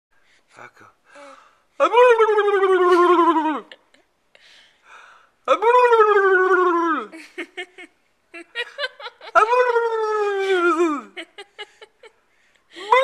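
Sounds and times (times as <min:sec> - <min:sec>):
man making howl-like noises: 0:01.8 - 0:03.7, 0:05.5 - 0:07.1, 0:09.4 - 0:11.2.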